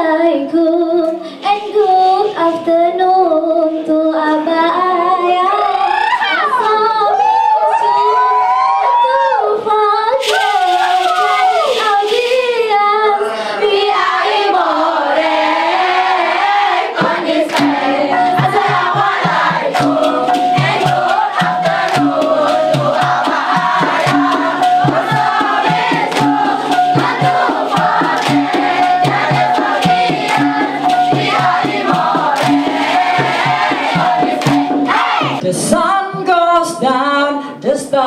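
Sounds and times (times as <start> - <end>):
chorus of voices singing: 13.1 - 35.8
drum strokes: 14.2 - 35.4
repeating bass pattern: 17.0 - 35.4.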